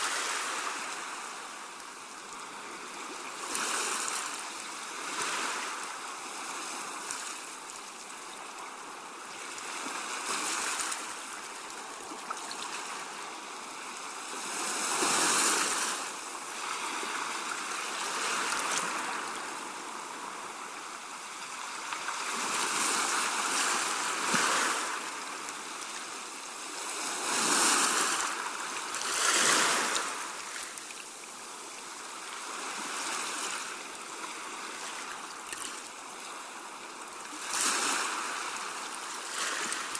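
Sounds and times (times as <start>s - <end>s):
small waves washing on shore: 0.0s - 39.9s.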